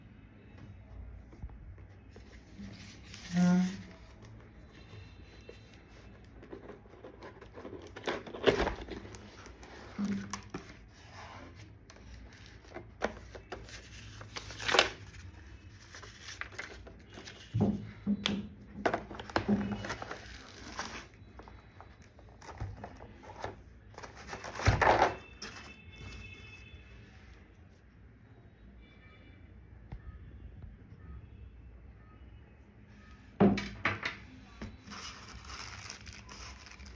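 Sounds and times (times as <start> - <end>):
cardboard and plastic rustling: 1.3 - 26.7, 33.5 - 36.9.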